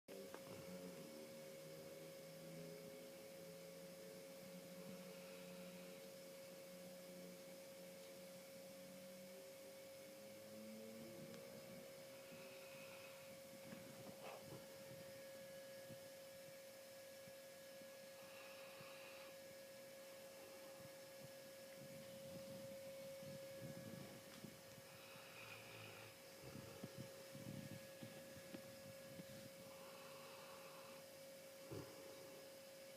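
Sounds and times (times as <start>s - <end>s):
steady electrical hum: 0.1s - 32.9s
faint snoring: 4.4s - 6.9s, 10.2s - 14.6s, 18.0s - 19.7s, 23.6s - 32.6s.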